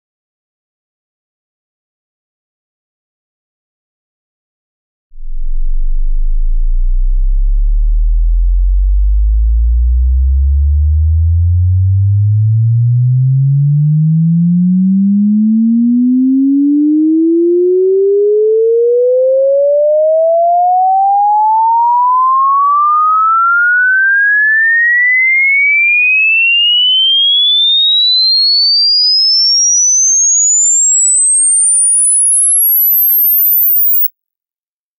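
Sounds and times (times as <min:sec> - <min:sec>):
electronic tone rising in pitch: 0:05.2 - 0:24.2, 0:29.2 - 0:34.1.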